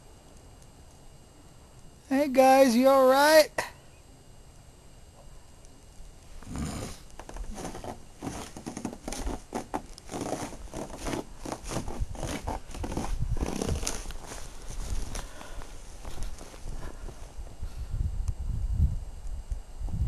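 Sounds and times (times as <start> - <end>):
footsteps crunching through snow: 7.5 - 17.5.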